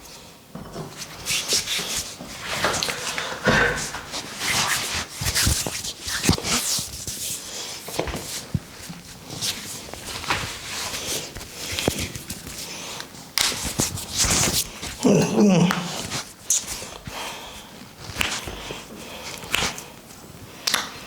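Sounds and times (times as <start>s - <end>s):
hands rubbing oiled head: 1.1s - 7.4s
sharp pats and slaps: 19.4s - 19.8s.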